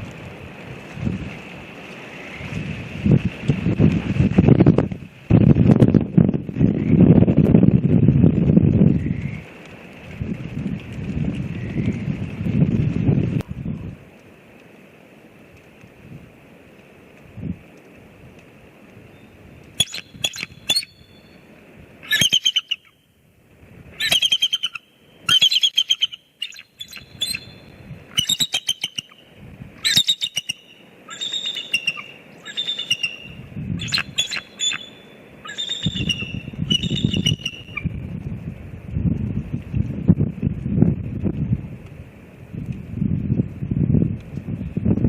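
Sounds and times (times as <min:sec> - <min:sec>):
wind rumble on microphone: 0:00.0 - 0:14.3, 0:15.4 - 0:22.2, 0:23.2 - 0:24.4, 0:26.9 - 0:30.5, 0:32.4 - 0:45.0
eagles chattering calls: 0:22.0 - 0:22.9, 0:24.0 - 0:27.6, 0:28.2 - 0:29.2, 0:29.8 - 0:37.8.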